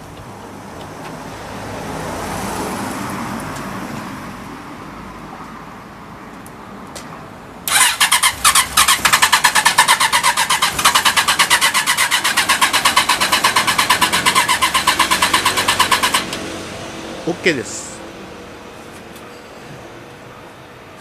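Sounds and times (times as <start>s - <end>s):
motorcycle engine chugging: 7.7s - 16.4s.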